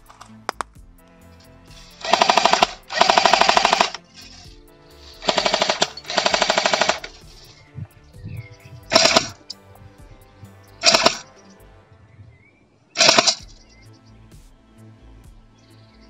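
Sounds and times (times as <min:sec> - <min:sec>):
airsoft machine gun bursts: 0:01.7 - 0:07.4, 0:08.9 - 0:09.5, 0:10.8 - 0:11.2, 0:13.0 - 0:13.5.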